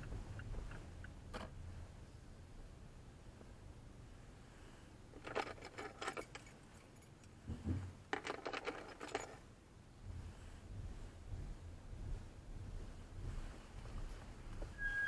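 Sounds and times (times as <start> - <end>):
metallic rattling and clicking: 5.2 - 7.4, 8.1 - 9.4
dull low thump: 10.0 - 14.8.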